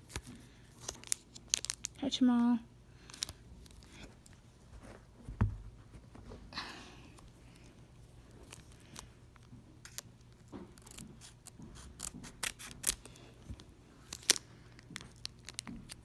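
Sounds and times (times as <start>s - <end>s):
foil pack crinkling: 0.0s - 2.0s, 14.0s - 16.0s.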